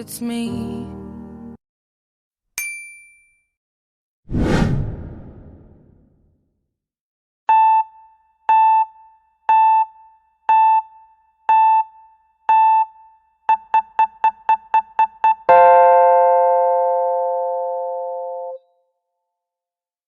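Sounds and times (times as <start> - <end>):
countdown timer beeps: 7.5 - 15.8.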